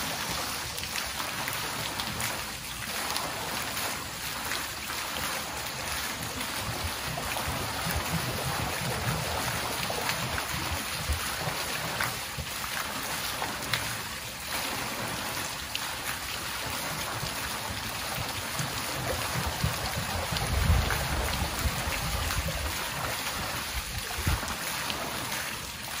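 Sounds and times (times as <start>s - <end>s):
steady watery hiss: 0.0s - 26.0s
water dripping and splashing: 0.0s - 26.0s.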